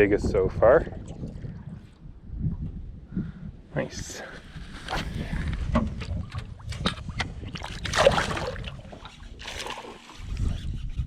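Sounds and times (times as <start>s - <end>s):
water sloshing and splashing: 0.8s - 2.8s, 4.6s - 10.7s.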